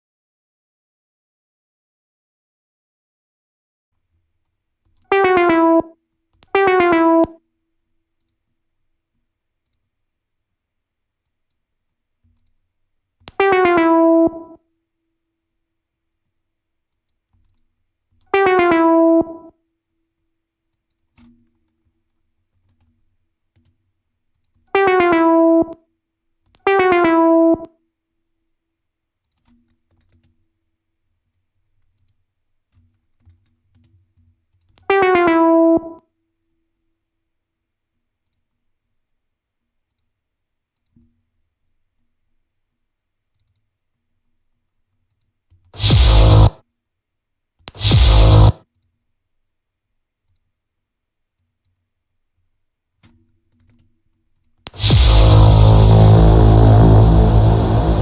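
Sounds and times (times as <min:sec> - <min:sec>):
buzzy electronic tone: 0:34.9 - 0:36.0, 0:45.8 - 0:46.6, 0:47.7 - 0:48.6, 0:54.7 - 0:58.0.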